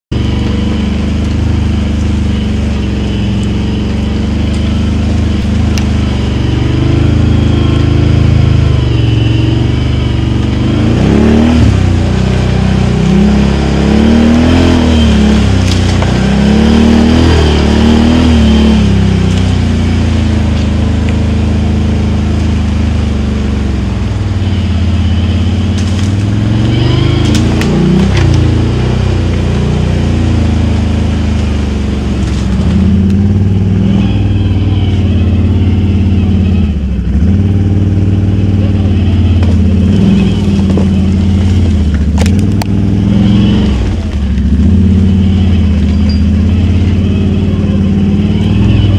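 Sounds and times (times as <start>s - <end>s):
atv engine revving: 0.1s - 48.9s.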